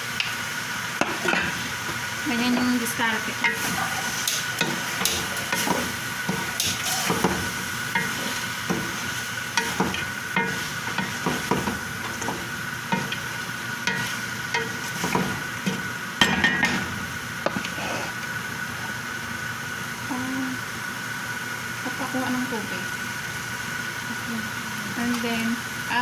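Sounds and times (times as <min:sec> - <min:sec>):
food frying sizzle: 0:00.0 - 0:26.0
spoon scraping and knocking pan: 0:01.0 - 0:17.8.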